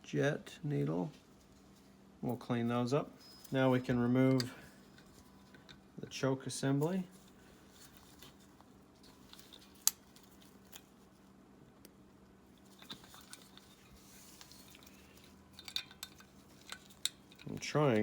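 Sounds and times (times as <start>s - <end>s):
light metal handling: 3.1s - 5.9s, 6.7s - 18.0s.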